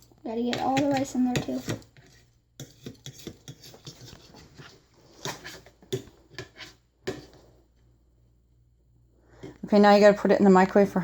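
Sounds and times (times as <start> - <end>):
fork scraping and tapping bowl: 0.0 - 7.5.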